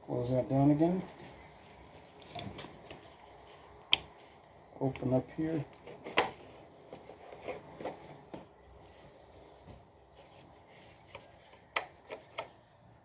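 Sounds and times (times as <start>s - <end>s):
plastic clicks and rubbing: 10.9s - 12.6s.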